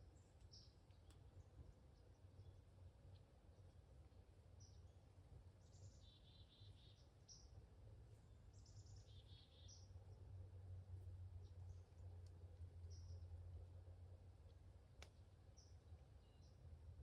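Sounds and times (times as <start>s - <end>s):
low steady rumble: 0.0s - 17.0s
faint songbird trills: 4.5s - 7.6s, 8.2s - 10.3s, 12.8s - 13.3s, 15.1s - 16.6s.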